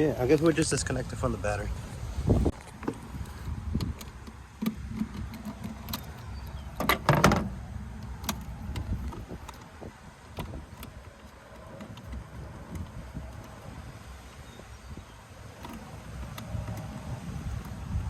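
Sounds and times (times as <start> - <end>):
tools clicking and knocking: 2.6 - 13.6.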